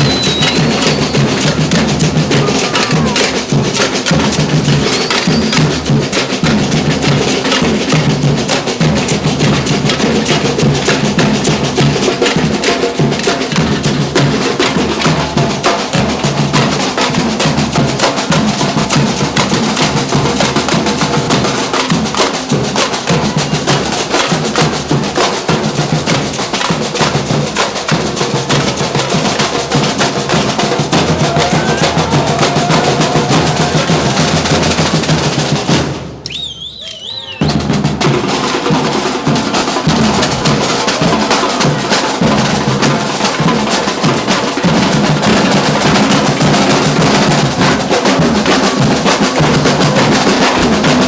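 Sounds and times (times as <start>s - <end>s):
bass drums: 0.0s - 26.3s, 28.1s - 36.1s
snare drums: 0.0s - 51.0s
wood-block clicks: 4.8s - 5.7s.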